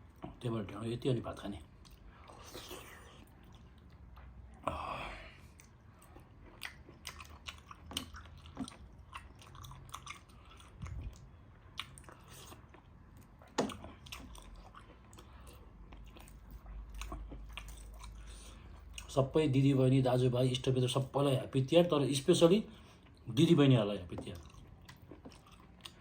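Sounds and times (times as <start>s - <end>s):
person chewing food: 1.7s - 19.1s, 24.2s - 26.0s
lip smacks and mouth clicks: 24.7s - 26.0s.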